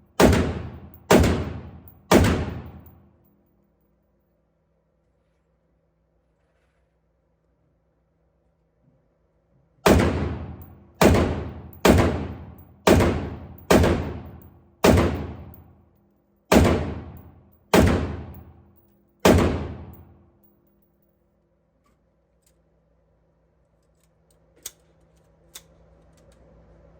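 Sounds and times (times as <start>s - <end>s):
rifle shots echoing: 0.2s - 3.0s, 9.8s - 15.7s, 16.5s - 20.2s.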